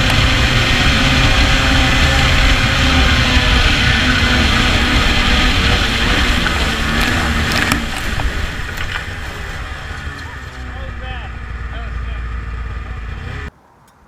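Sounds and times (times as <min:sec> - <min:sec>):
snowmobile engine running hard: 0:00.0 - 0:13.5.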